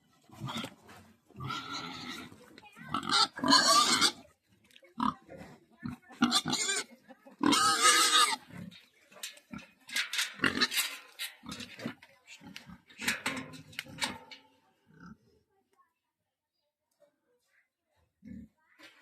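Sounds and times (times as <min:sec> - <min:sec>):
pig squealing: 0:02.9 - 0:04.2, 0:06.2 - 0:08.5.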